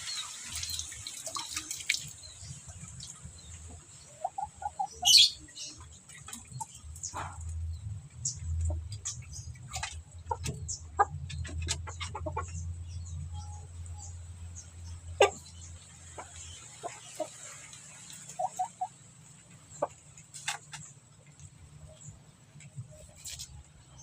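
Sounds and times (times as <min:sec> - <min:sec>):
chicken clucking: 0:02.9 - 0:07.6, 0:08.2 - 0:14.0, 0:14.8 - 0:21.5.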